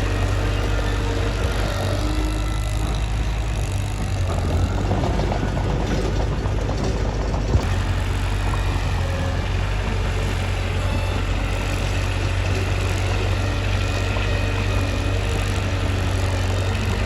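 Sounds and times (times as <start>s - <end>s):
bulldozer diesel engine running: 0.0s - 17.0s.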